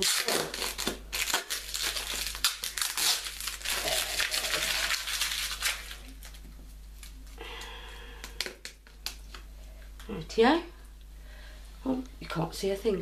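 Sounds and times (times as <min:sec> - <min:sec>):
tape tearing: 0:00.0 - 0:06.4
packaging crinkling: 0:00.0 - 0:07.4.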